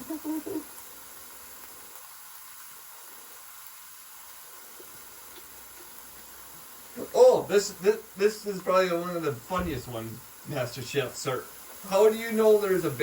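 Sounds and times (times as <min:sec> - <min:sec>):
burger patty sizzling: 0:00.0 - 0:13.0.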